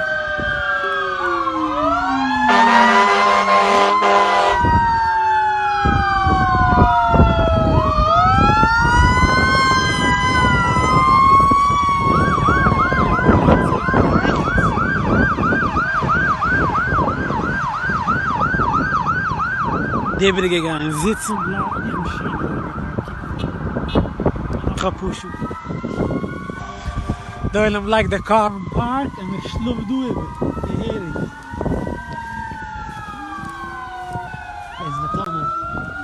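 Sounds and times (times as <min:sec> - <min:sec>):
emergency vehicle sirens wailing: 0:00.0 - 0:36.0
heavy vehicles rumbling: 0:00.0 - 0:36.0
horn blast: 0:02.5 - 0:04.6.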